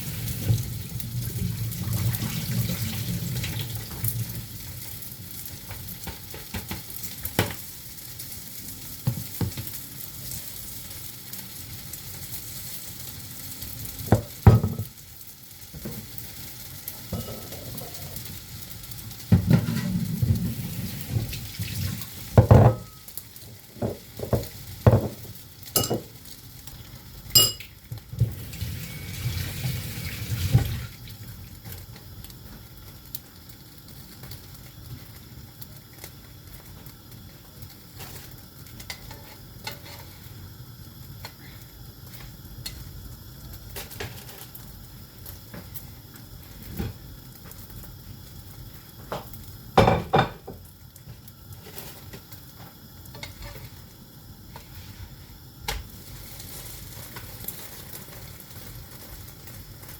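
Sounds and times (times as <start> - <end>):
utensils clinking on pans: 17.1 - 18.1, 23.9 - 26.2, 27.4 - 27.8.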